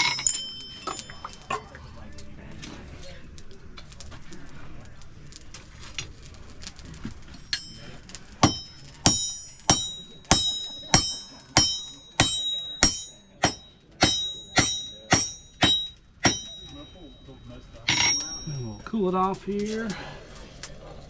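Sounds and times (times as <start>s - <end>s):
hammer striking iron on anvil: 0.0s - 1.6s, 7.5s - 17.2s, 17.9s - 18.8s.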